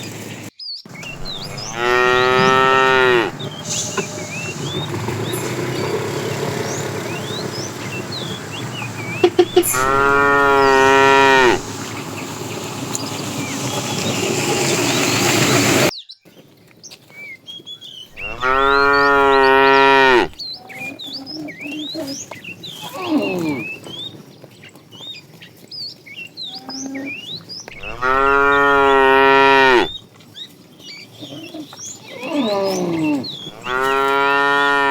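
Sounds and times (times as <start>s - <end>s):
cow mooing: 1.0s - 11.8s, 18.2s - 21.0s, 27.8s - 30.0s, 32.1s - 34.9s.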